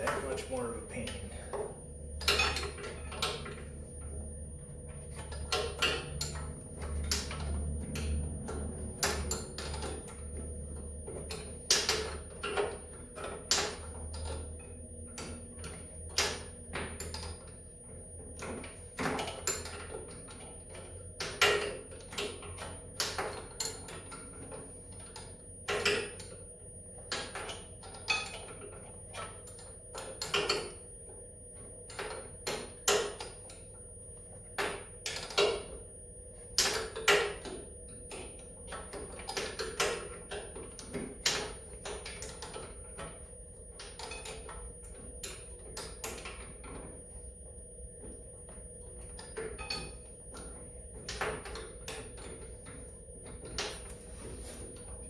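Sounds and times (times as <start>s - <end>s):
low steady hum: 0.0s - 16.5s.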